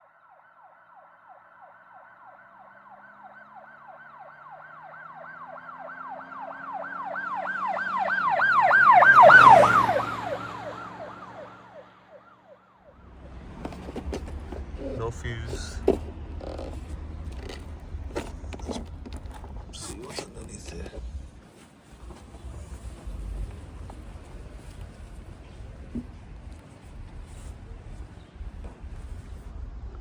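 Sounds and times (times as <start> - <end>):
emergency siren yelping: 0.0 - 13.1
low vehicle hum: 1.6 - 30.0.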